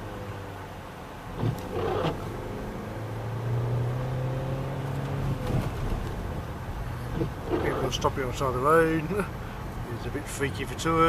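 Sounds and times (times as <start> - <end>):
car engine pulling uphill: 0.0 - 11.0.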